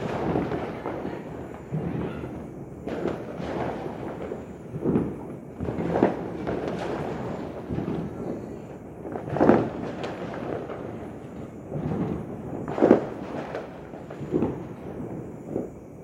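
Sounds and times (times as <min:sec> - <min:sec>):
fireworks bangs and booms: 0:00.0 - 0:16.0.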